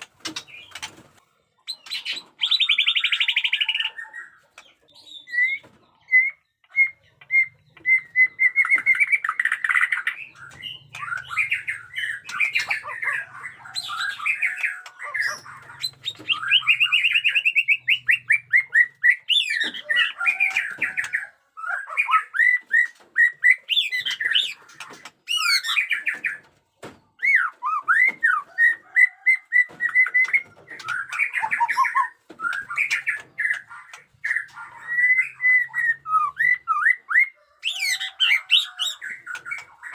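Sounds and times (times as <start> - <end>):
songbird singing varied song: 1.7 - 26.4, 27.2 - 39.9.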